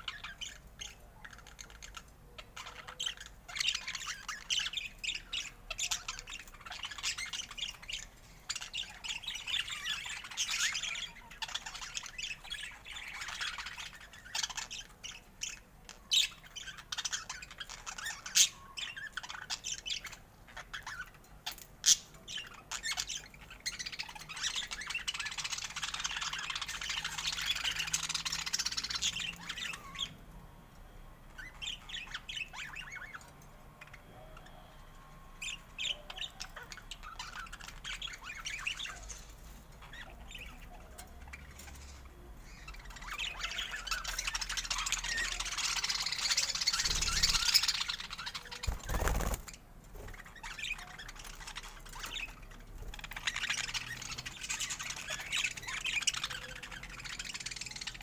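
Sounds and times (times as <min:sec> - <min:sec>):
budgerigars chattering and chirping: 0:00.0 - 0:30.2, 0:31.3 - 0:34.8, 0:35.4 - 0:58.0.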